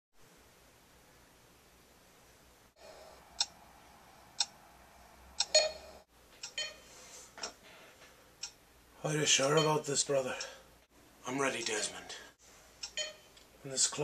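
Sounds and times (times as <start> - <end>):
clock ticking: 3.4 - 3.6, 4.4 - 4.6, 5.4 - 6.8, 8.4 - 8.6, 9.4 - 10.6.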